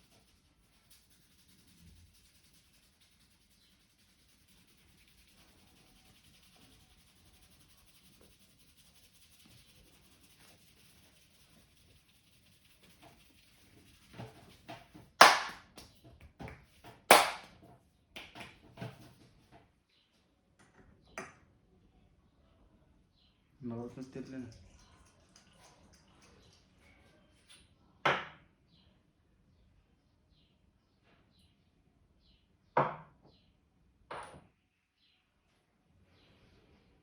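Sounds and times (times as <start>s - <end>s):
hands smacking during massage: 14.7s - 17.6s.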